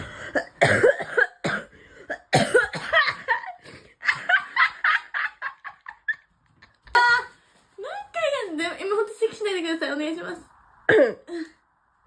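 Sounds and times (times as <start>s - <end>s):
girl coughing: 0.3s - 3.6s, 10.9s - 11.4s.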